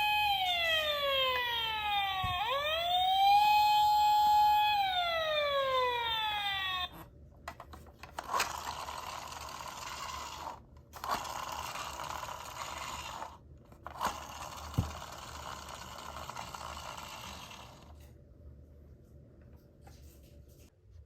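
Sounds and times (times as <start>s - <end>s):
toy car scraping rolling: 8.0s - 18.0s.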